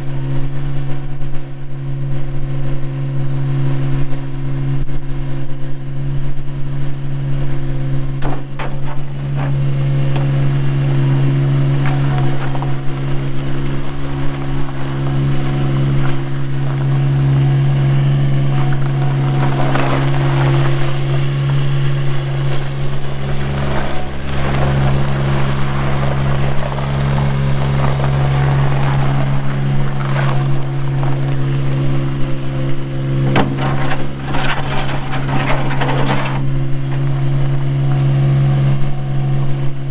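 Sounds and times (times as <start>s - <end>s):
diesel engine running: 0.0s - 39.9s
clattering bursts: 8.2s - 38.1s.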